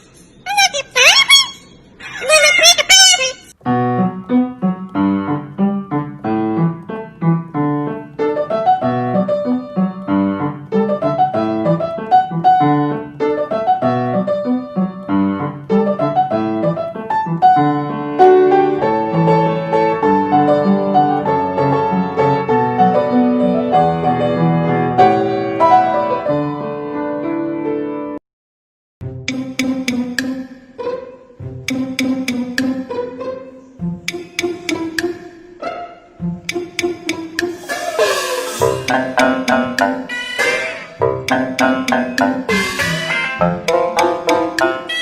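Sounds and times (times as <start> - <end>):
solo piano music: 3.6 - 28.2, 40.8 - 45.0.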